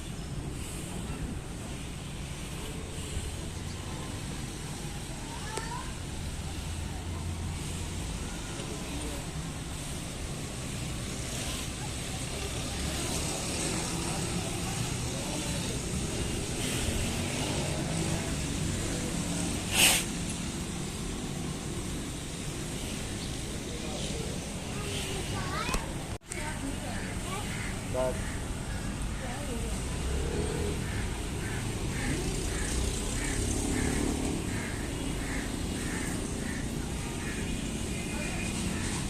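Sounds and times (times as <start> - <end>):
road traffic rumble: 0.0 - 39.0
short loud hiss: 19.7 - 20.2.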